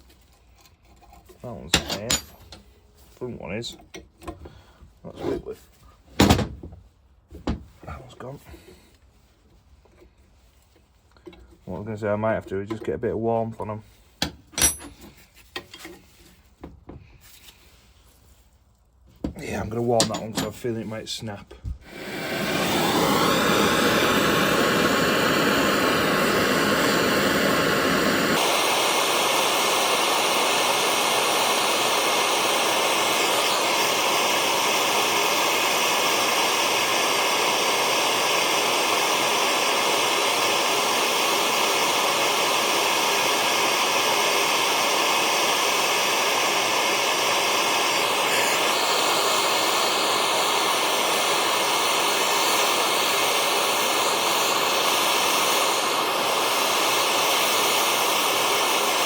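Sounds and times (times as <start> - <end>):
blowtorch flame hissing: 21.8 - 59.0.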